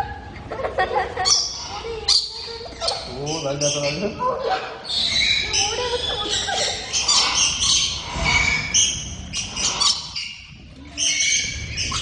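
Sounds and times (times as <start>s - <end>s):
small birds chirping and squawking: 0.0s - 12.0s.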